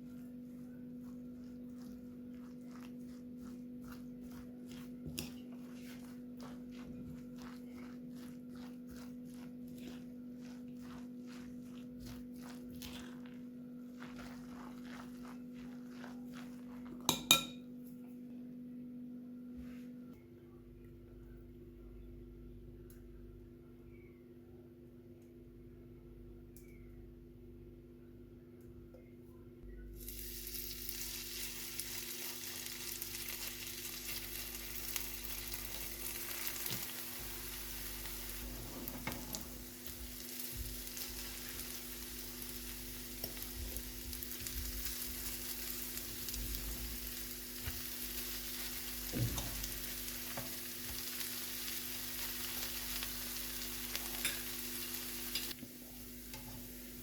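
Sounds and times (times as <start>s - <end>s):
low steady hum: 0.0s - 57.0s
pancakes sizzling in oil: 1.5s - 17.6s, 30.0s - 57.0s.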